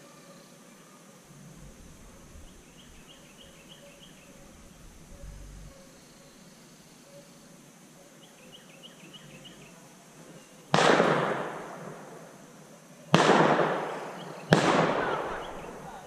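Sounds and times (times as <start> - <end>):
shotgun blasts: 10.7 - 12.2, 13.1 - 15.9.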